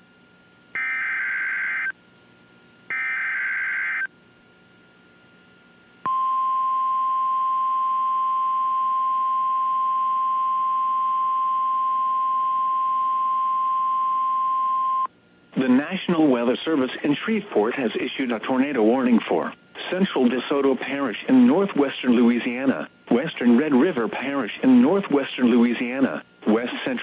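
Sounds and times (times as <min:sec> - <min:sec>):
buzzy data bursts: 0:00.8 - 0:01.9, 0:02.9 - 0:04.1
steady warning alarm tone: 0:00.8 - 0:01.9, 0:02.9 - 0:04.1.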